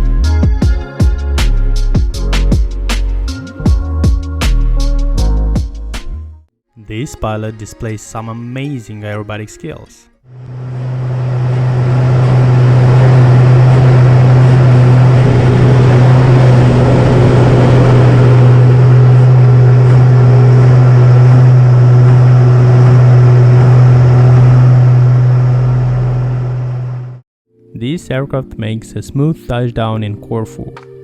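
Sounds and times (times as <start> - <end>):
aircraft engine drone: 10.3 - 27.2.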